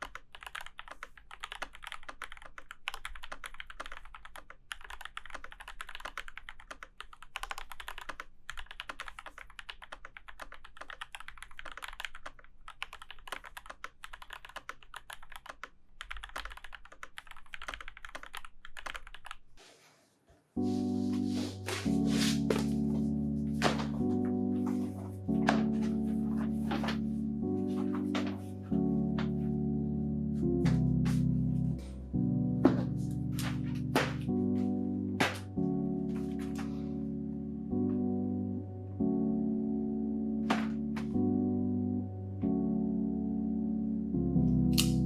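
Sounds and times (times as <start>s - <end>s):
fast typing on mechanical keyboard: 0.0s - 19.4s
background music: 20.6s - 45.0s.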